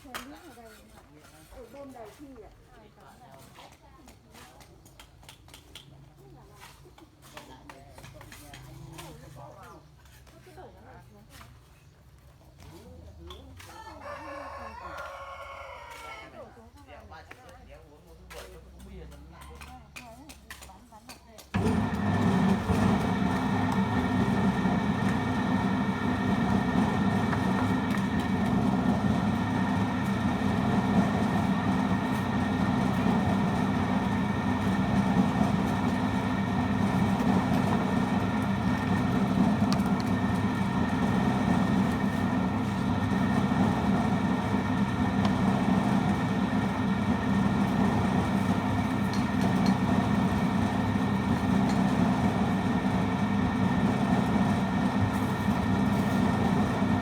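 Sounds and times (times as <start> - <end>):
engine running steadily: 21.6 - 57.0.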